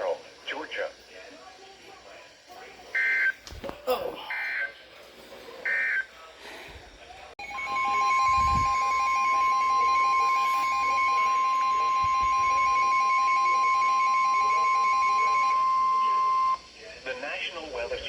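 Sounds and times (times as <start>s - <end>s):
rapid pulsing electronic beep: 7.4s - 16.7s
warbling data tones: 7.4s - 16.7s
steady warning tone: 7.4s - 16.8s.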